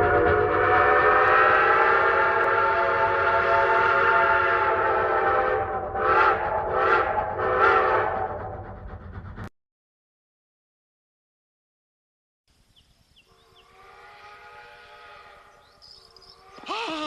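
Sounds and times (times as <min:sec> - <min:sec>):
train whistle chord blast: 0:00.0 - 0:08.8, 0:13.6 - 0:15.6.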